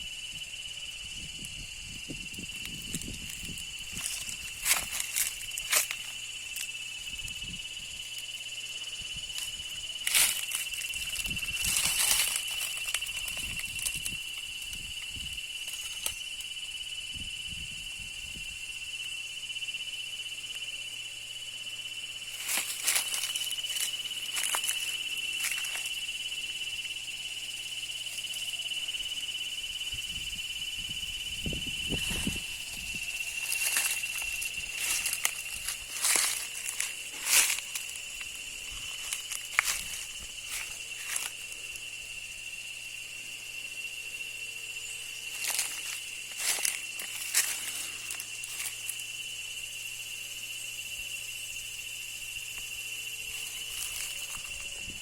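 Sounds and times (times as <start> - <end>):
rustling and crackling: 9.3 - 14.8, 22.4 - 26.0, 32.0 - 41.5, 45.3 - 48.9.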